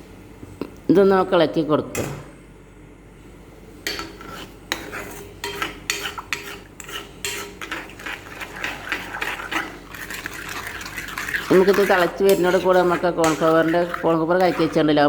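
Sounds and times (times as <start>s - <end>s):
utensil scraping a pan: 3.9s - 15.0s.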